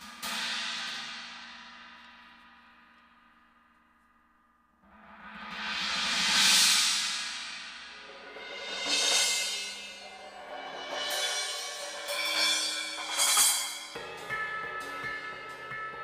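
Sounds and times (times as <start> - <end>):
cymbal wash ringing: 8.0 - 16.0.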